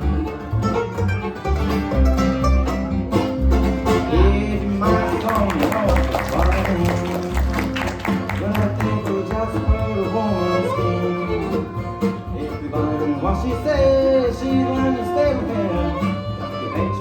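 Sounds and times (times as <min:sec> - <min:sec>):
acoustic bluegrass band playing: 0:00.0 - 0:17.0.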